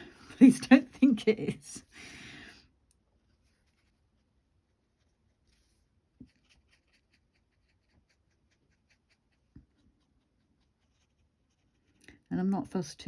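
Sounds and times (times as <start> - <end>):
scratchy strokes on paper: 3.2 - 12.3.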